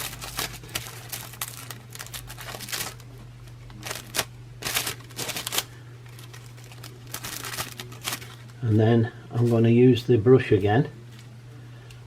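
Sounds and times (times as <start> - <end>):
papery rustles: 0.0 - 3.1, 3.7 - 8.6
steady low hum: 0.0 - 12.0.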